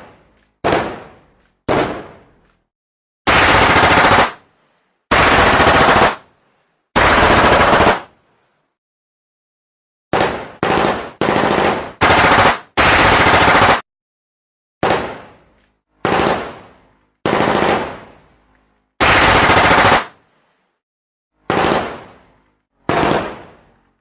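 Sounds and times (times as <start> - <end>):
automatic gunfire bursts: 3.3 - 4.4, 5.1 - 6.2, 7.0 - 8.1, 10.1 - 13.8, 16.0 - 16.6, 17.2 - 18.0, 19.0 - 20.2, 21.5 - 22.1, 22.9 - 23.5.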